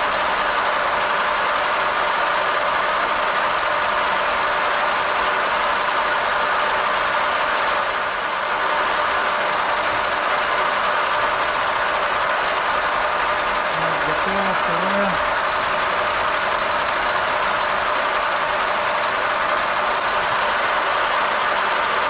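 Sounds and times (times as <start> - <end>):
machine tool drilling metal: 10.9 - 21.7.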